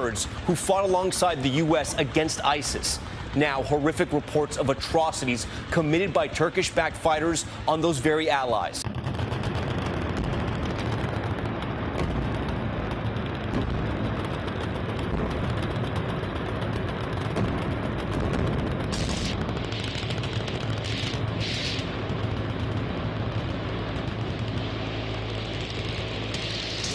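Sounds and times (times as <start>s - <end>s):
machine-gun fire: 8.8s - 26.9s.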